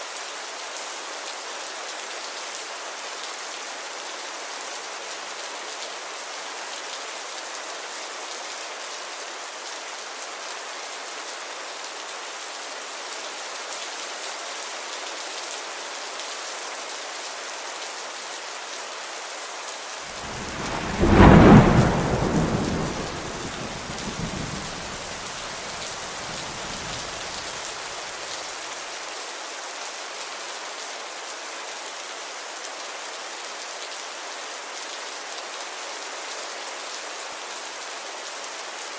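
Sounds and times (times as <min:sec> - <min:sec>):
steady rain falling: 0:00.0 - 0:38.9
thunder clap rumbling: 0:20.2 - 0:27.5.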